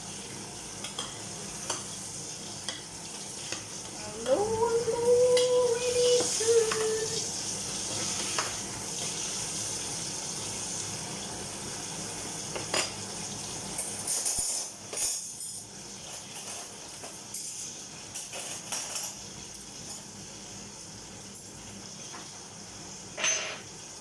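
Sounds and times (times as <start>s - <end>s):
dishes and utensils clinking: 12.5s - 13.0s, 13.7s - 20.1s, 23.1s - 24.0s.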